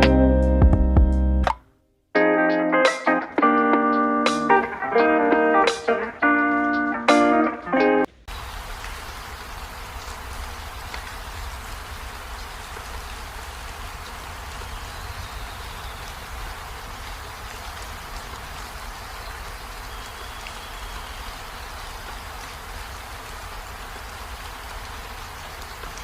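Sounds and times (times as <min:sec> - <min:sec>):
steady rain hiss: 0:08.1 - 0:26.0
raindrop ticks: 0:08.3 - 0:26.0.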